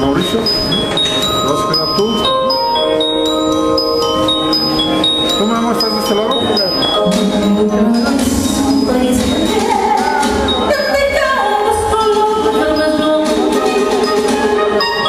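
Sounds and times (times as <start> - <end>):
bell-like melody over chords: 0.0 - 15.0.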